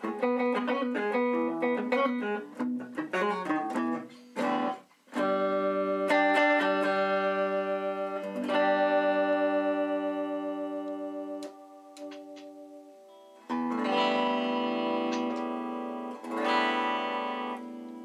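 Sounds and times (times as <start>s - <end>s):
electric guitar chords ringing: 0.0s - 18.0s
electric guitar picked notes: 0.0s - 18.0s.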